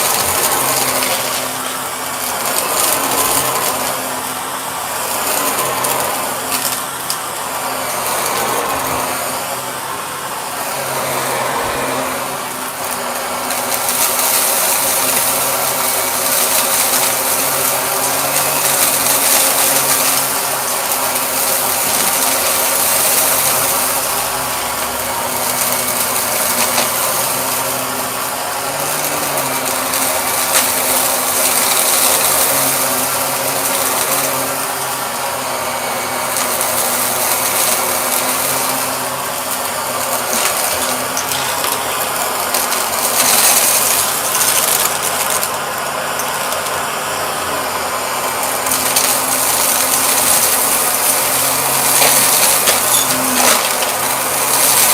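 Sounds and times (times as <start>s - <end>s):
vacuum cleaner running: 0.0s - 54.9s.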